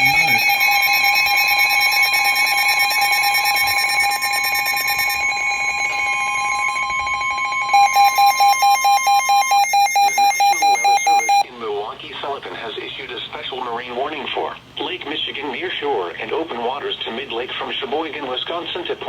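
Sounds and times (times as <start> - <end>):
piercing electronic alarm tone: 0.0 - 11.4
pure warning tone: 0.0 - 11.4.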